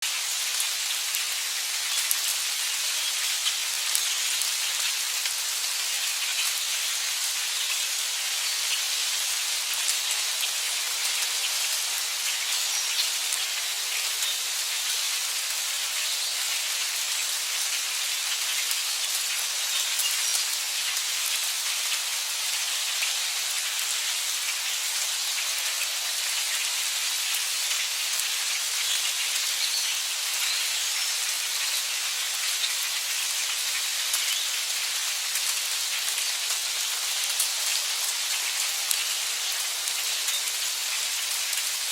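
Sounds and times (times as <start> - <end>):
heavy rain falling: 0.0 - 41.9.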